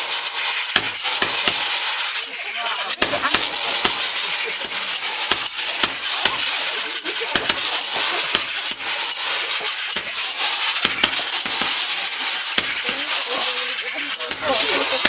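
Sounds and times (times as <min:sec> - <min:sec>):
firework crackling and popping: 0:00.0 - 0:15.0
high-pitched whistle: 0:00.0 - 0:15.0.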